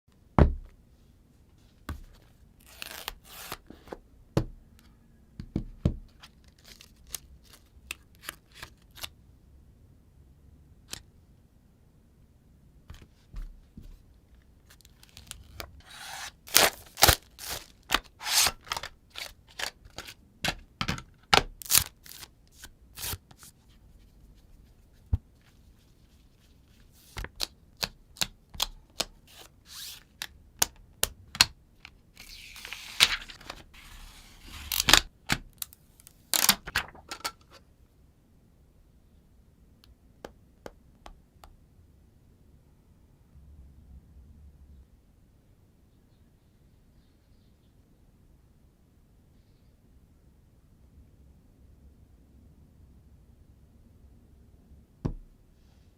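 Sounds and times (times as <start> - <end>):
plastic film peeling and tearing: 14.8 - 20.1, 21.6 - 23.2, 32.2 - 37.0.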